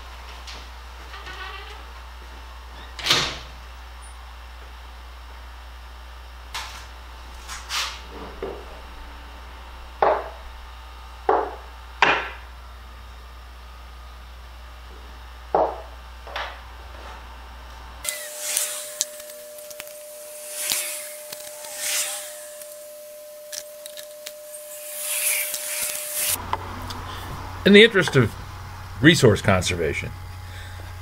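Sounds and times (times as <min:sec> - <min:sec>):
wood knocking on wood: 0:10.0 - 0:10.4.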